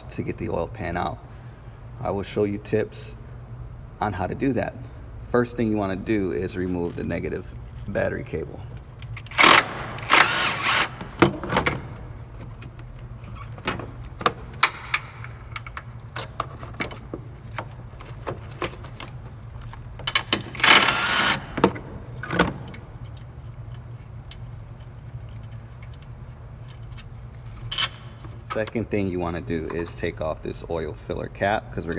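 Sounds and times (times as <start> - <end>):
steady low hum: 0.0 - 31.9
wrench clinking and scraping: 8.8 - 28.8.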